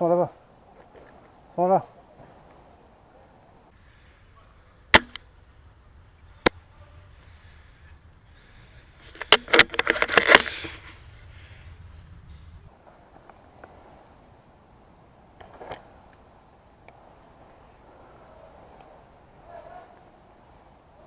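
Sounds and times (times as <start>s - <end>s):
clicks and rattling: 9.0s - 10.9s.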